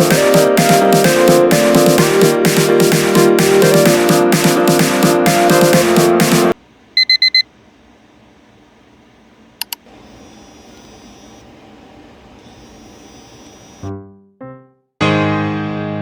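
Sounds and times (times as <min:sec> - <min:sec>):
faint steady hum: 0:06.6 - 0:13.8
high electronic beeps: 0:07.0 - 0:07.4
sharp clicks: 0:09.6 - 0:09.9.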